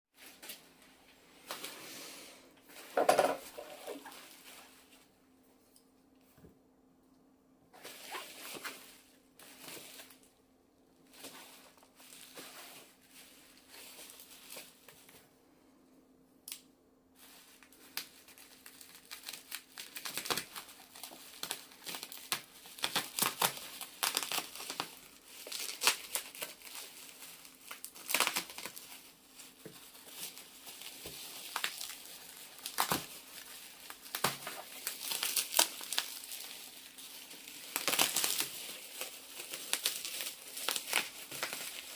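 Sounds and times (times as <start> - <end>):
packaging crinkling and tearing: 2.7 - 4.8, 11.0 - 15.2, 17.2 - 41.9.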